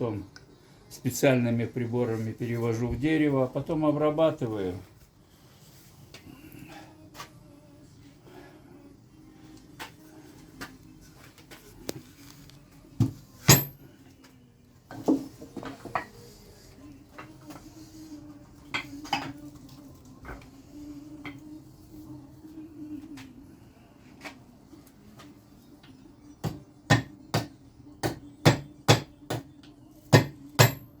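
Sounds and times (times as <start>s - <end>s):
hard objects clinking and knocking: 13.0s - 13.8s.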